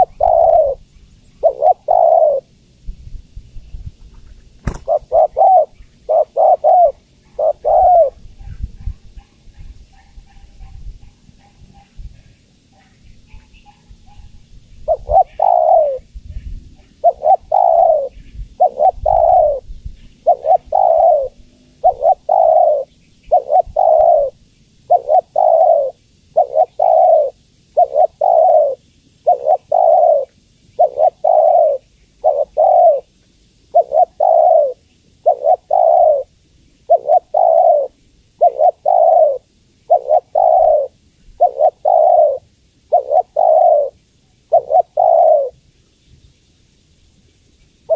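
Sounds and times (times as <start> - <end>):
dove cooing: 0.0 - 2.6, 3.8 - 12.4, 13.3 - 45.6.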